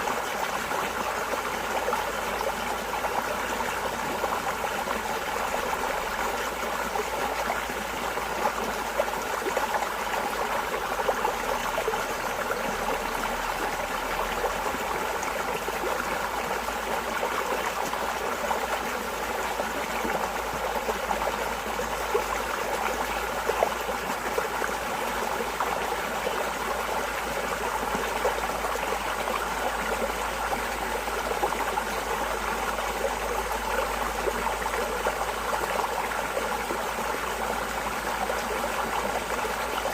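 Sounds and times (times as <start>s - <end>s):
stream water trickling: 0.0s - 39.9s.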